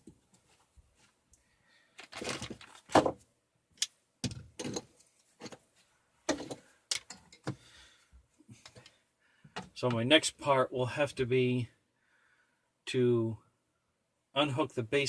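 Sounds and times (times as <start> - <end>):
objects clunking and clicking: 2.0 - 3.2, 3.8 - 5.6, 6.3 - 7.6, 8.6 - 9.9.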